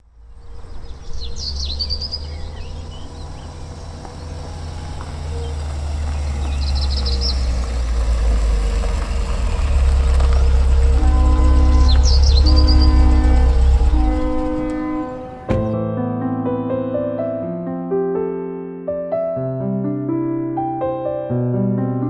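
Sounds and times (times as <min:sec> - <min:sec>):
birds chirping: 0:00.0 - 0:15.8
low rumble: 0:00.0 - 0:15.8.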